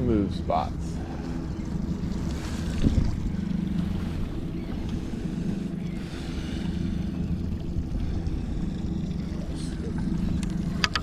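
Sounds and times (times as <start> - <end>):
boat motor running: 0.0 - 11.0
wind on microphone: 0.0 - 11.0.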